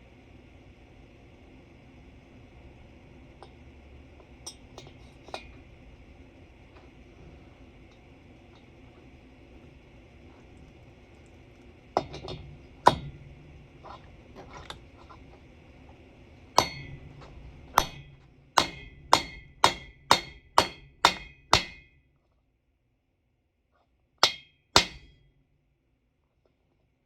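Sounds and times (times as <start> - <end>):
hammer blows on metal: 16.6 - 17.0.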